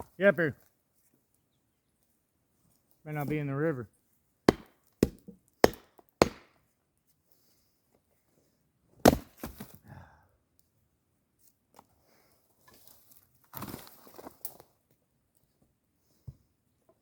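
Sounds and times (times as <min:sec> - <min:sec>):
wood chopping with blade: 0:04.5 - 0:06.6, 0:09.0 - 0:09.8.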